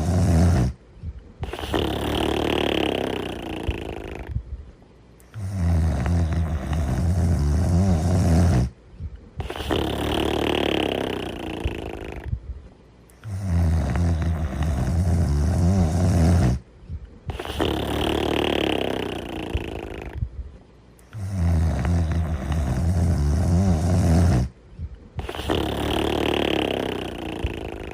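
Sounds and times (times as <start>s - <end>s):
dog snoring: 0.0s - 0.8s, 1.4s - 4.4s, 5.2s - 8.8s, 9.4s - 12.4s, 13.1s - 16.7s, 17.3s - 20.3s, 21.0s - 24.6s, 25.2s - 27.9s.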